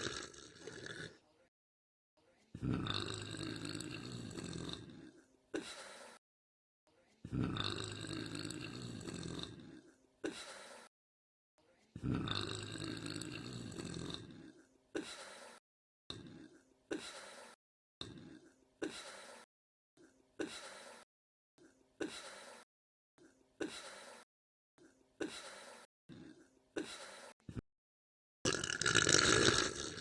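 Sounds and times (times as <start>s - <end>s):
woman burping: 0.0s - 1.2s.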